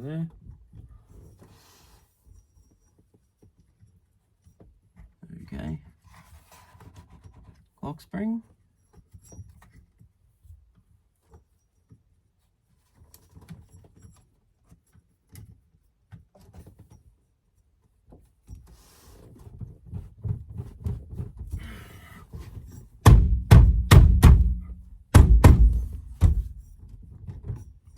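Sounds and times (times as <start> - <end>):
heavy thumps: 23.0 - 26.7.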